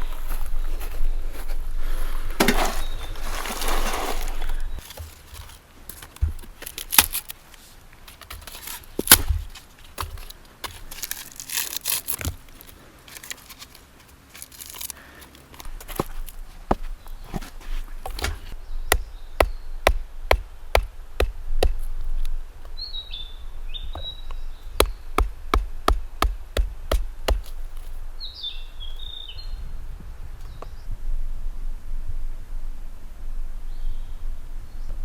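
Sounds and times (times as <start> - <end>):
sharp knocks: 18.1 - 21.9, 24.8 - 27.6
bird chirping: 18.1 - 27.6, 28.2 - 29.8.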